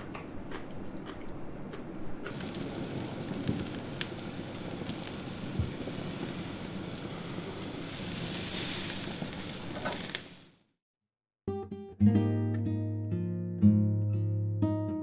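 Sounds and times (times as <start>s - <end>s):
campfire crackling and popping: 2.3s - 10.5s.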